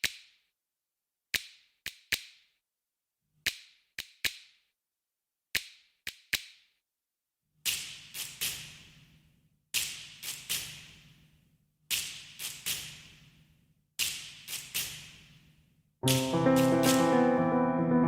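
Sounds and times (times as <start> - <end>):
sharp percussive hits with echo: 16.0 - 17.3.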